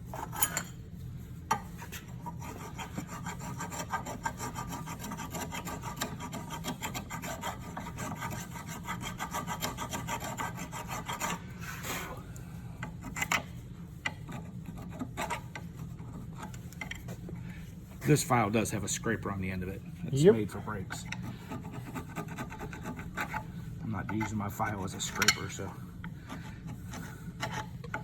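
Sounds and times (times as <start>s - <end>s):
hand file rasping on metal: 1.5s - 11.9s, 12.8s - 17.2s, 20.8s - 28.0s
metal scrapes and clicks: 20.9s - 28.0s.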